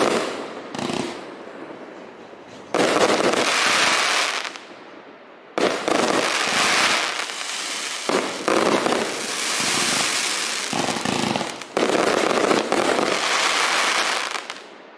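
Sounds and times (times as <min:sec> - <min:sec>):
firework cake rapid fire: 0:05.6 - 0:14.6.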